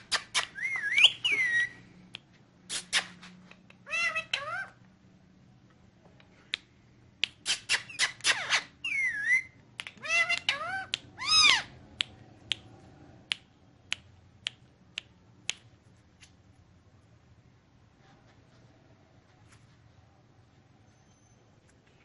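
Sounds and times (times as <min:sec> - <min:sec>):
parakeet chirps and squawks: 0:00.0 - 0:01.8, 0:02.7 - 0:04.8, 0:07.4 - 0:11.9
parakeet loud arched call: 0:07.7 - 0:11.8.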